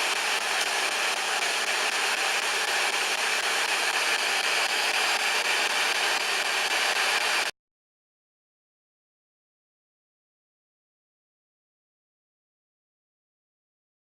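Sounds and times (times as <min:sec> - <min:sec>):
radio static hiss: 0:00.0 - 0:07.5.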